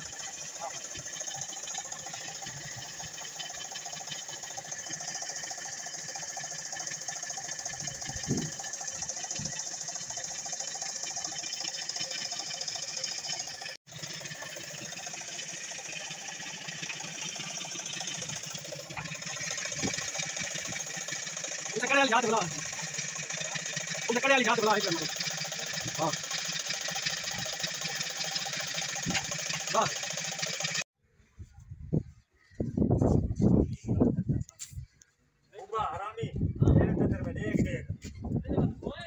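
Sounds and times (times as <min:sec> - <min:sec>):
machine high-pitched hum: 0:00.0 - 0:30.9.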